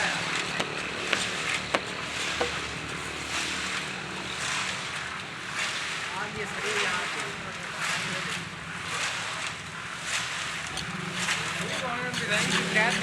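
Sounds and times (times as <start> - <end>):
concrete mixer running: 0.0 - 5.0, 10.6 - 13.0
sharp knocks: 0.5 - 2.9.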